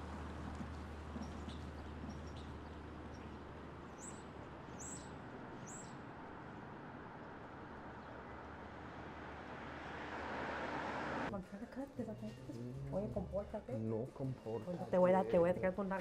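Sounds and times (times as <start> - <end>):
faint outdoor background noise: 0.0 - 16.0
bird chirping: 0.7 - 6.0.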